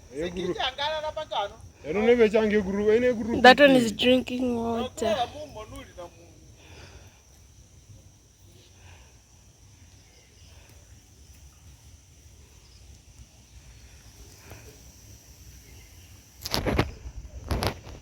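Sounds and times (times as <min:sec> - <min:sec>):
high-pitched insect drone: 0:00.0 - 0:08.7.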